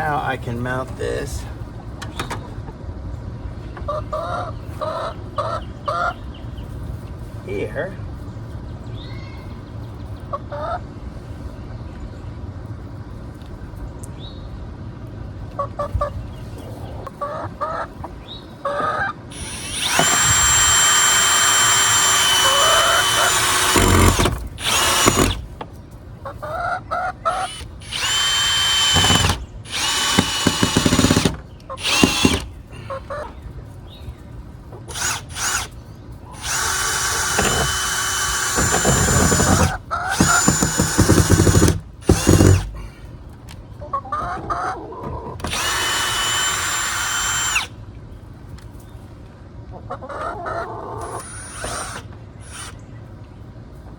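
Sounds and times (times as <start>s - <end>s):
chickens clucking: 3.7s - 6.3s, 10.2s - 10.9s, 15.5s - 19.2s, 26.2s - 27.6s, 32.8s - 33.5s, 39.7s - 40.1s, 43.7s - 45.4s, 49.6s - 51.3s
power drill driving screws: 19.3s - 25.4s, 27.4s - 32.5s, 34.9s - 35.7s, 36.4s - 42.7s, 45.5s - 47.7s.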